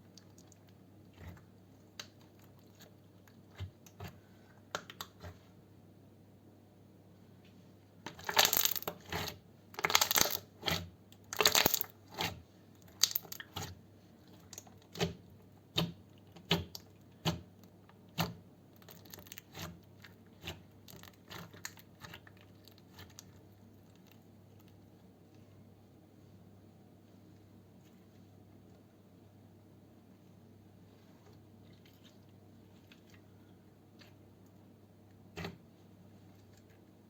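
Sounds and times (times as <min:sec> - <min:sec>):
slime squelching: 0:00.0 - 0:05.6, 0:08.0 - 0:25.4, 0:31.0 - 0:37.0
slime popping and clicking: 0:12.9 - 0:13.4.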